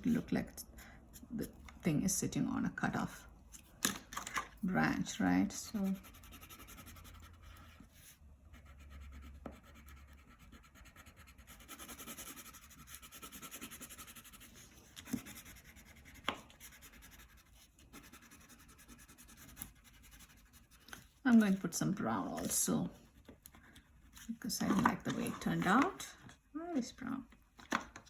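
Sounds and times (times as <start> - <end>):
crayon scratching on paper: 4.8 - 26.0.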